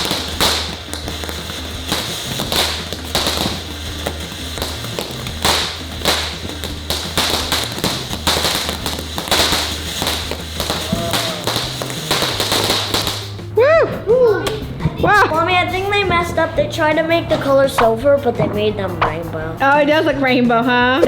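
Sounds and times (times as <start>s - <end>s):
firework cake pops and bangs: 0.0s - 13.4s, 17.8s - 18.0s.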